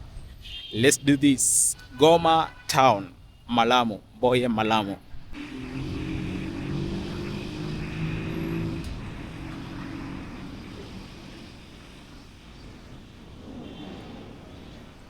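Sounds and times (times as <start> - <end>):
low rumble of traffic: 0.0 - 15.0
vehicle engine running close: 5.3 - 14.2.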